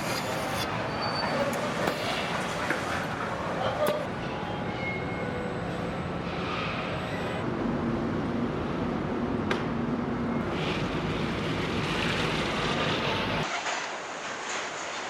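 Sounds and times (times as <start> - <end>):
steady mechanical rumble: 7.1 - 13.5.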